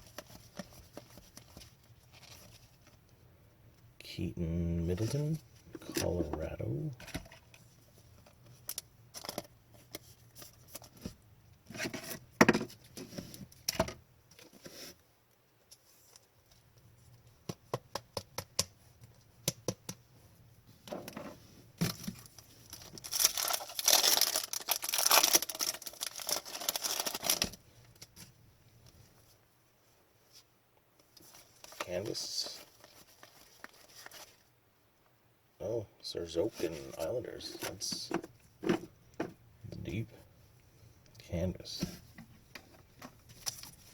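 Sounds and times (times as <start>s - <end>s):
wrapper crinkling and tearing: 22.1s - 28.1s, 32.4s - 34.5s.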